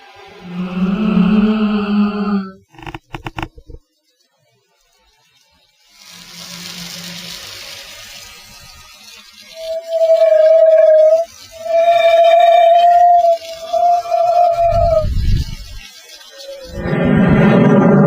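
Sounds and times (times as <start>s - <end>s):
long breathy hiss: 0.0s - 2.6s, 5.9s - 18.0s
high held oooo voice: 0.2s - 2.6s, 9.5s - 18.0s
person making ghost noises: 0.3s - 2.6s, 9.7s - 15.5s, 16.3s - 18.0s.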